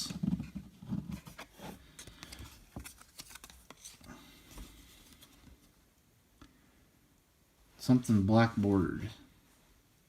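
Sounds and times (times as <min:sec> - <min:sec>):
trading cards clicking and rustling: 0:02.0 - 0:04.1.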